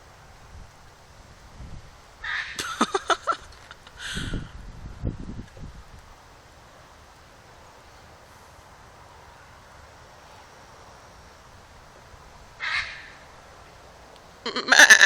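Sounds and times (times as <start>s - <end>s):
faint background hiss: 0.0s - 15.0s
harsh animal call: 14.5s - 15.0s.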